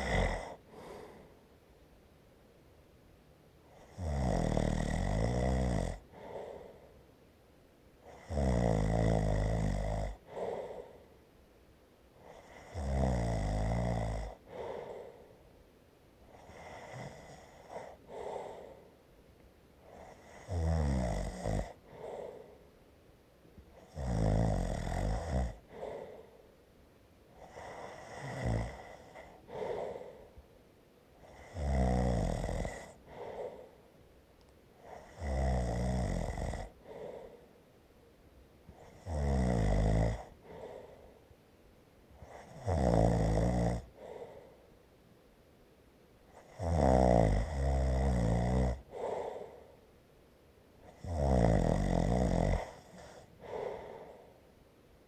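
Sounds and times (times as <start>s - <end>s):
person snoring: 0.0s - 1.3s, 3.8s - 6.7s, 8.1s - 11.0s, 20.0s - 22.5s, 23.8s - 26.3s, 27.4s - 30.3s, 31.2s - 33.7s, 34.9s - 37.4s, 38.8s - 41.1s, 42.2s - 44.4s, 46.4s - 49.6s, 50.9s - 54.3s
soft short breath: 0.0s - 1.7s.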